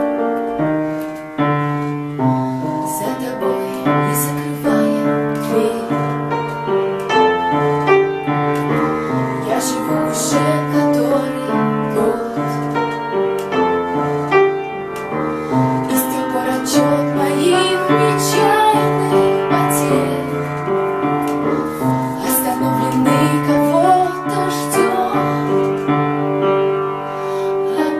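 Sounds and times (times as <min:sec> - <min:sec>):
piano and keyboard: 0:00.0 - 0:27.9
woman singing pop ballad: 0:02.8 - 0:06.0, 0:09.4 - 0:12.5, 0:15.9 - 0:20.4, 0:22.2 - 0:25.5, 0:27.7 - 0:27.9.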